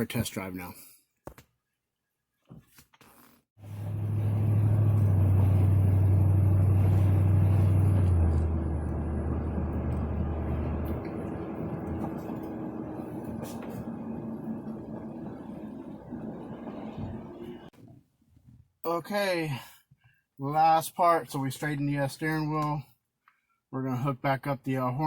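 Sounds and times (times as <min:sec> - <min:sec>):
car engine drone: 0:03.6 - 0:17.7
driving rumble: 0:03.6 - 0:17.7.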